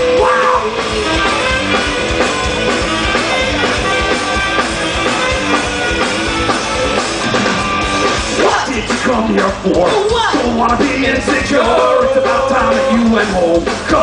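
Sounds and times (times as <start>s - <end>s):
live rock band playing: 0.0s - 14.0s.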